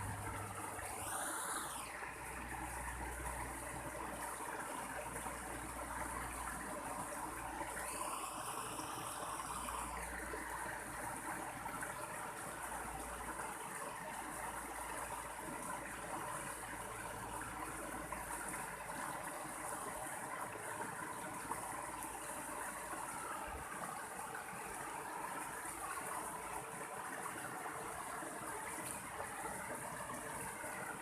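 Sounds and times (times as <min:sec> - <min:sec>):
faint rising and falling tone: 0:00.0 - 0:03.3, 0:07.5 - 0:10.6
stream water running: 0:00.0 - 0:31.0.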